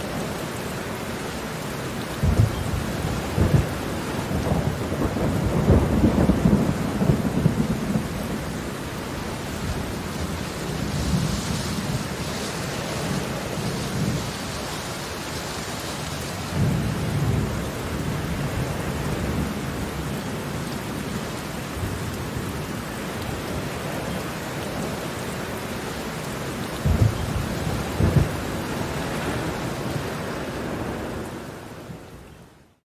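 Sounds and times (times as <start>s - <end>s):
heavy rain falling: 0.0s - 32.7s
low rumbles of thunder: 2.2s - 14.5s, 16.5s - 21.1s, 26.8s - 31.3s.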